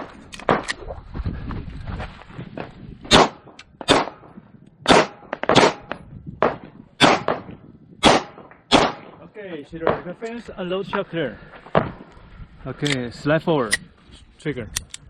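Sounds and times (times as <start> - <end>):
pistol shots with echo: 3.1 - 4.2, 4.9 - 9.2.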